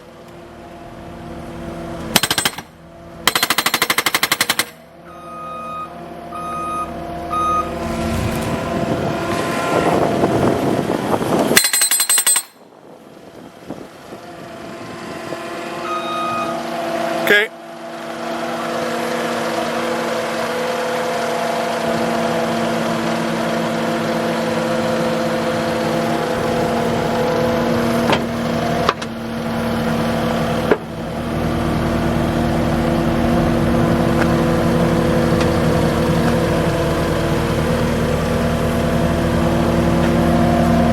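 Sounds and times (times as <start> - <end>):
engine idling: 17.5 - 40.9.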